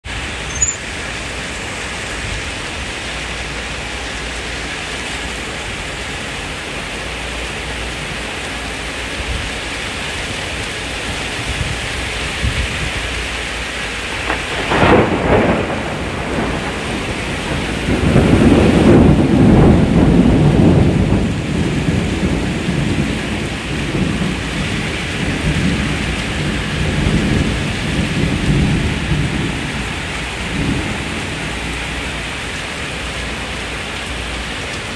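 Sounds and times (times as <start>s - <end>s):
heavy rain: 0.0s - 34.9s
rolling rumble of thunder: 0.1s - 34.9s
thunderclap: 14.0s - 32.4s.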